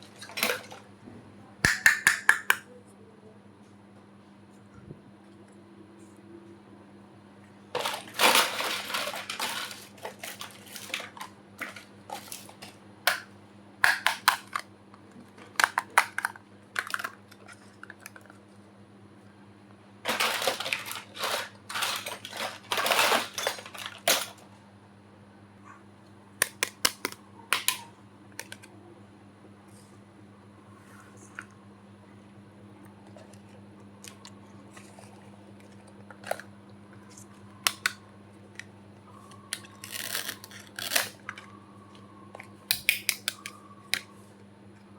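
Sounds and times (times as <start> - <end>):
plastic toy pieces clattering: 0.0 - 0.8, 7.8 - 13.3, 15.4 - 18.3, 20.1 - 24.4, 39.6 - 41.5.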